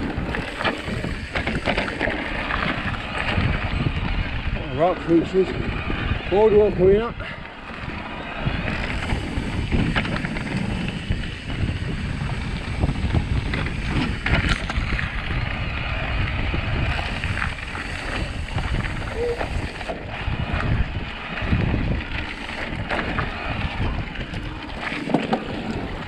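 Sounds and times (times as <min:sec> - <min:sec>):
bike knocks and rattles: 0:00.0 - 0:04.1, 0:08.5 - 0:15.6, 0:16.8 - 0:26.0
wind buffeting microphone: 0:00.0 - 0:26.0.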